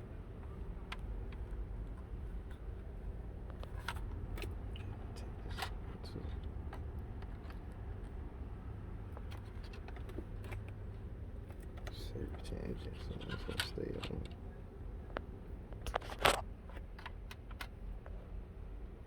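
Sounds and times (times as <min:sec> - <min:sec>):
car engine rumbling: 0:00.0 - 0:19.0.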